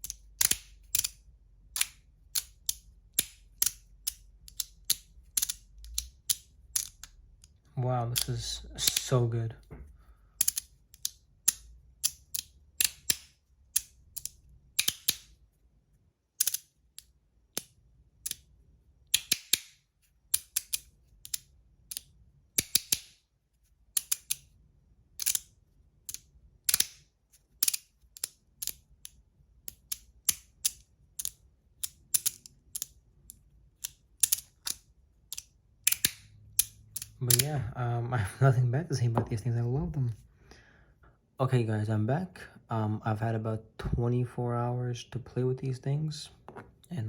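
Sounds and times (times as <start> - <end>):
magnetic fidget slider clicking: 0.0 - 7.5.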